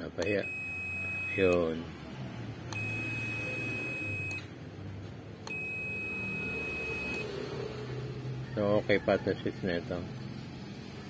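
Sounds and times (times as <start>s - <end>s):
continuity tester beeping: 0.1s - 1.8s, 2.7s - 4.5s, 5.4s - 7.4s.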